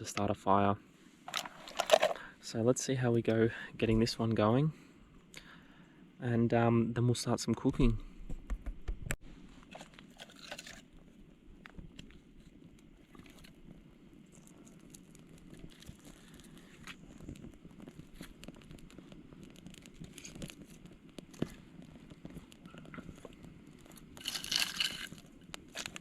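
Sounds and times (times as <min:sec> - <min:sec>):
kindling crackling and rustling: 0:01.3 - 0:02.3, 0:09.6 - 0:26.0.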